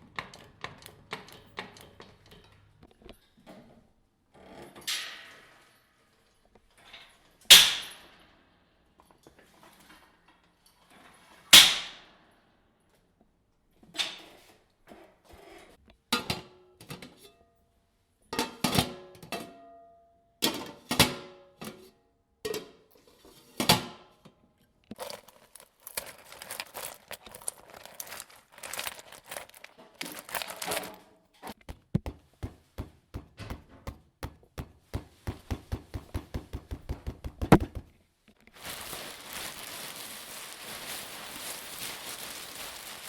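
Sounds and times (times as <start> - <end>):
crinkling and crackling: 24.8 - 32.1, 37.4 - 43.0.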